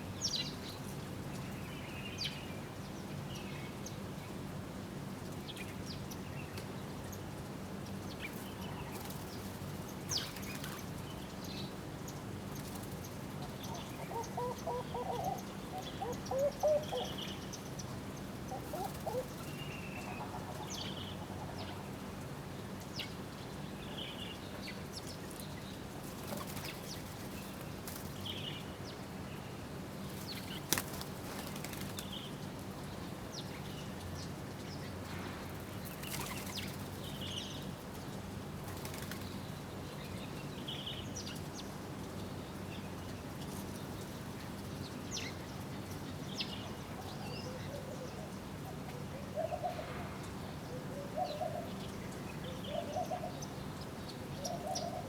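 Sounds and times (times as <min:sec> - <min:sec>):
small birds chirping: 0:07.8 - 0:22.0.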